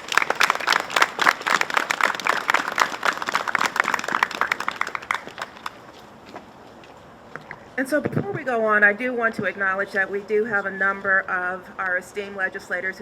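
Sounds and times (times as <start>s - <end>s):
audience applauding: 0.0s - 5.9s.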